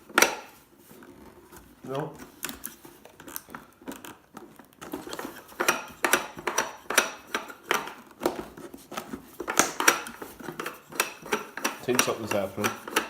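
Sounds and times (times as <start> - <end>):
tool prying plastic housing: 9.4 - 13.0.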